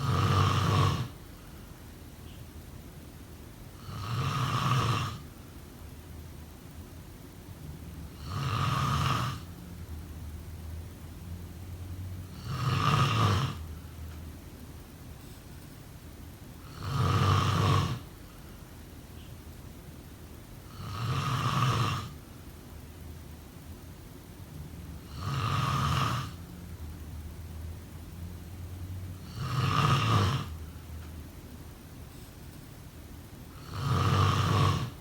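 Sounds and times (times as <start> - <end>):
person snoring: 0.0 - 1.2, 3.8 - 5.2, 8.1 - 9.6, 12.3 - 13.7, 16.6 - 18.1, 20.7 - 22.2, 25.0 - 26.4, 29.2 - 30.6, 33.5 - 35.0
faint low rumble of breath: 0.0 - 35.0.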